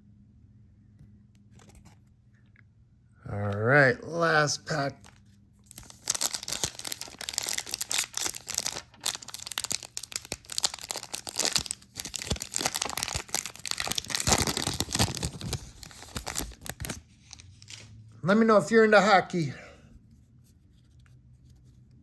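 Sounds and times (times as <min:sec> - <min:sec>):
wrapper tearing and crinkling: 0:04.8 - 0:17.9.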